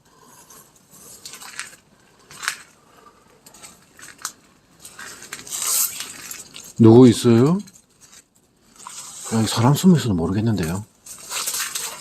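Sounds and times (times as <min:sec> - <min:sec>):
rustling: 0:00.2 - 0:09.9, 0:10.5 - 0:12.0
sharp crunches and clicks: 0:01.1 - 0:02.8, 0:03.4 - 0:09.0.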